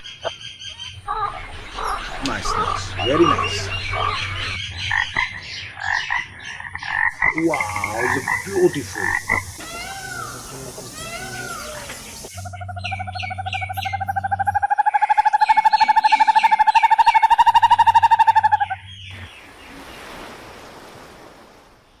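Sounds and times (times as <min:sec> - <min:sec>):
faint hiss: 0:07.3 - 0:12.4
animal trilling call: 0:07.3 - 0:18.8.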